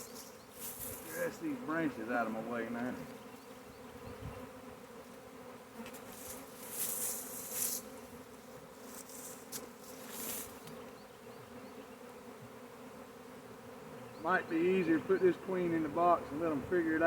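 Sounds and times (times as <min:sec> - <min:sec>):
leafy branches rustling: 0:00.0 - 0:02.6, 0:05.9 - 0:10.7
bee swarm buzzing: 0:00.0 - 0:17.0.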